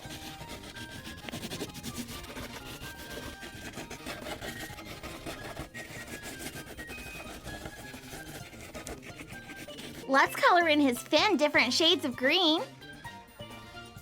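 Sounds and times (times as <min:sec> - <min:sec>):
marker scratching on paper: 0:00.0 - 0:10.3
soft background music: 0:00.0 - 0:14.0.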